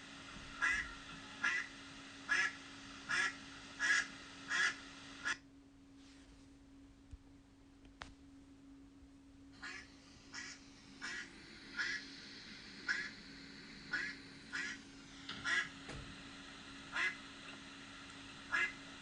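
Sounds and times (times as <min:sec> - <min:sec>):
duck quacking: 0:00.6 - 0:01.7, 0:02.3 - 0:05.4, 0:09.6 - 0:12.0, 0:12.9 - 0:13.1, 0:13.9 - 0:14.8, 0:15.4 - 0:15.7, 0:16.9 - 0:17.2, 0:18.5 - 0:18.8.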